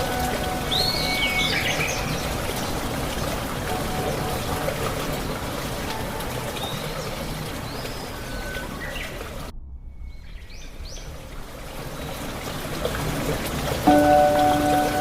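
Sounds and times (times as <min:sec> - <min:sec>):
stream water running: 0:00.0 - 0:09.5, 0:10.5 - 0:15.0
bird chirps: 0:00.6 - 0:02.4.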